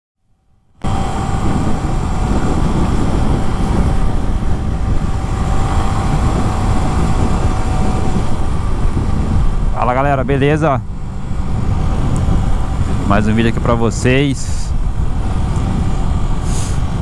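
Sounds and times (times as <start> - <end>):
motorcycle engine running: 0.8 - 17.0
riding noise rush: 0.8 - 17.0.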